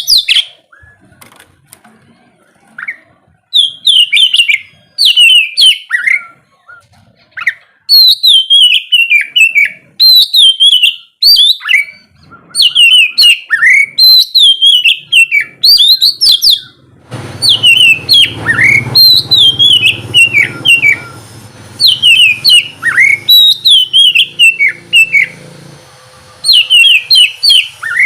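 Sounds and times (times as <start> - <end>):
bird singing whistled phrases: 2.8 - 6.8, 7.4 - 16.8, 17.4 - 21.2, 21.8 - 25.4, 26.4 - 28.0.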